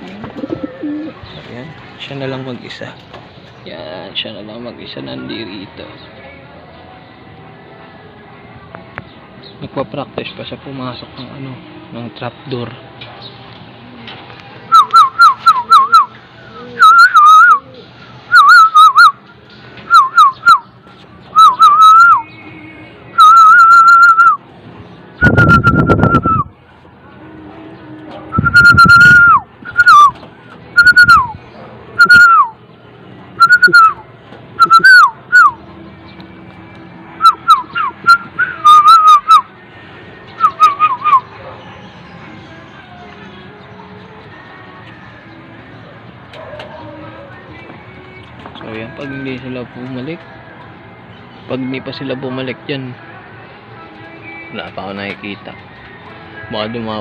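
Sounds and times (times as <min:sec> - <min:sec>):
person whistling: 0:14.7 - 0:16.1, 0:16.8 - 0:17.7, 0:18.3 - 0:19.2, 0:19.9 - 0:20.7, 0:21.4 - 0:22.3, 0:23.2 - 0:24.4, 0:25.2 - 0:26.5, 0:28.3 - 0:30.2, 0:30.8 - 0:31.4, 0:32.0 - 0:32.6, 0:33.4 - 0:34.0, 0:34.6 - 0:35.6, 0:37.2 - 0:39.5, 0:40.4 - 0:41.2.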